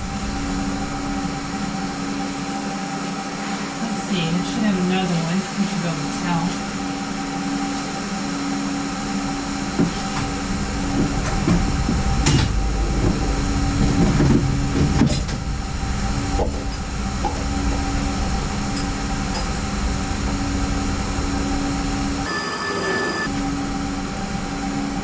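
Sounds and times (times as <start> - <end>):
machine hum: 22.3 - 23.3.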